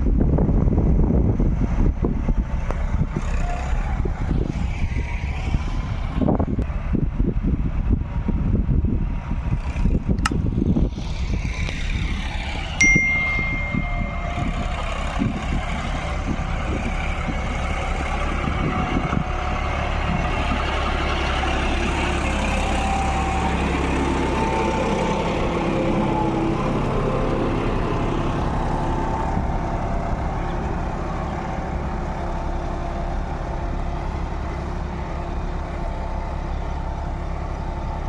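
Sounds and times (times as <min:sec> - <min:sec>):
tractor diesel engine running: 0:00.0 - 0:38.0
wind buffeting microphone: 0:00.0 - 0:38.0
short high-pitched tone: 0:12.8 - 0:14.9.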